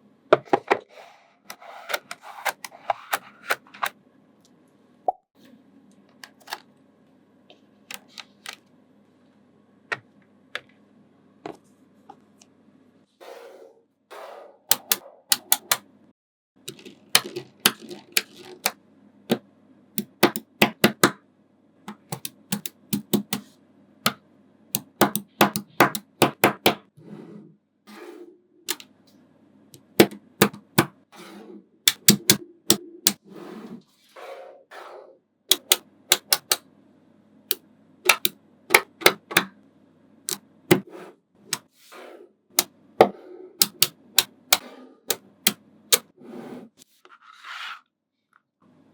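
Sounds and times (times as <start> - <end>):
magnetic balls clicking together: 16.6 - 18.8, 20.0 - 21.2, 21.9 - 23.4, 31.9 - 33.2, 35.5 - 36.6, 38.1 - 39.5, 43.6 - 44.6.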